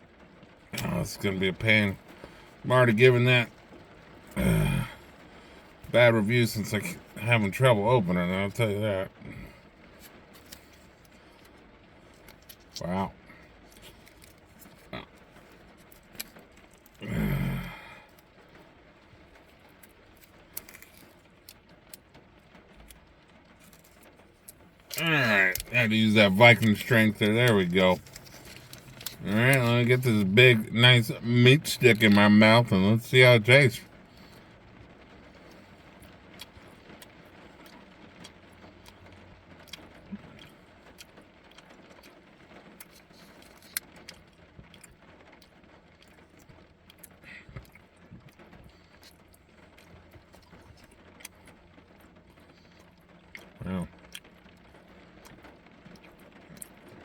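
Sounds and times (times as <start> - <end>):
low steady hiss: 0.0 - 57.0
plastic wrapper crinkling: 13.4 - 17.0, 22.8 - 30.8
man chewing with mouth clicks: 23.6 - 30.2, 35.4 - 57.0.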